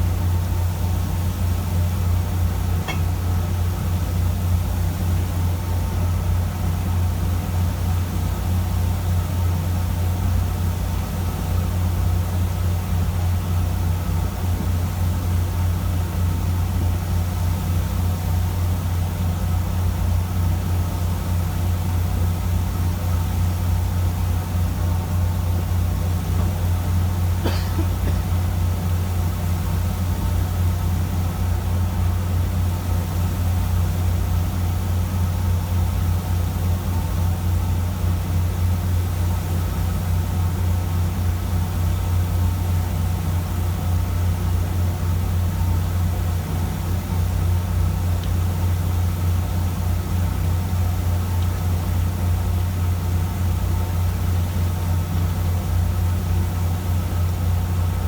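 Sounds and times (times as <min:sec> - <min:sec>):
boat engine humming: 0:00.0 - 0:58.0
faint click: 0:02.8 - 0:03.1.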